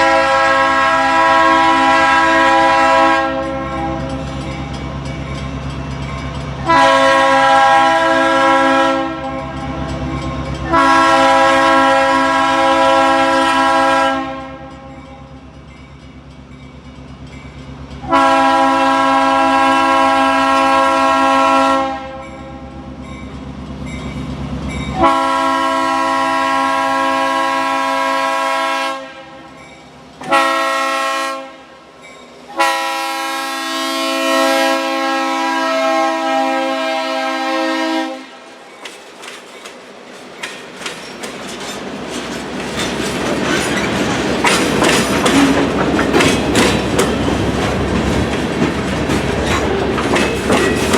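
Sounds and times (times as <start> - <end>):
locomotive air horn blasts: 0.0 - 4.3, 6.6 - 9.9, 10.6 - 15.2, 18.1 - 22.7, 24.9 - 29.6, 30.2 - 31.8, 32.5 - 38.5
low train rumble: 0.0 - 50.9.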